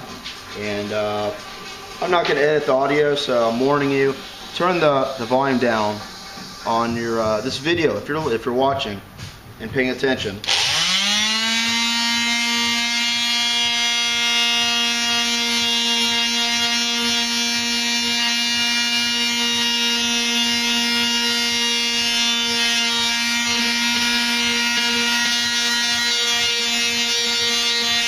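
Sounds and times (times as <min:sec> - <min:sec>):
electric sander running: 0:10.4 - 0:28.0.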